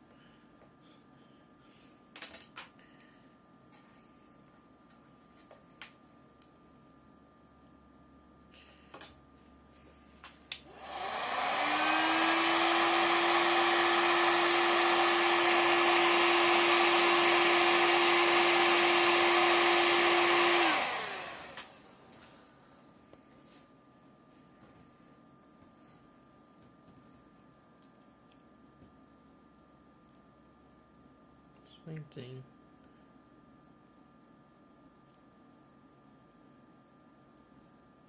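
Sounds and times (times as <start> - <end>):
small electric motor whining: 10.6 - 22.0.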